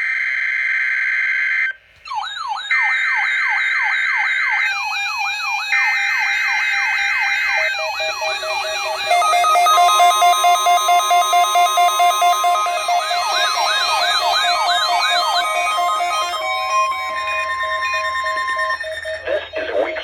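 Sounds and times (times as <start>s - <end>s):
pulsed beeping alarm: 2.1s - 20.0s
whooping siren alarm: 2.1s - 20.0s
buzzy digital data tones: 4.6s - 20.0s.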